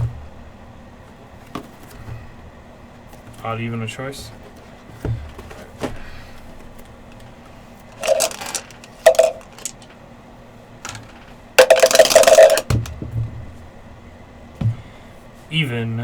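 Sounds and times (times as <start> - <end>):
dice clattering on hard surface: 8.0 - 9.9, 10.9 - 12.9.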